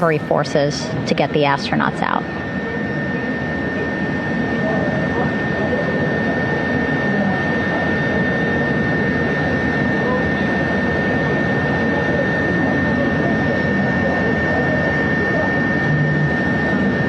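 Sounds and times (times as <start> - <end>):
high whine: 0.0 - 5.0
aircraft engine noise: 0.0 - 17.0.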